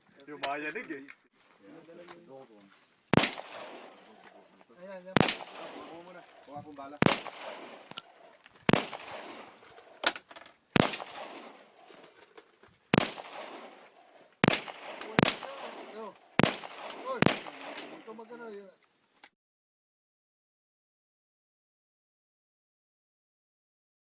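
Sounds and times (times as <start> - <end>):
person speaking: 0.0 - 2.8, 4.0 - 7.1, 15.0 - 16.2
gunshots: 3.1 - 4.4, 5.1 - 10.2, 10.8 - 12.1, 12.9 - 18.3.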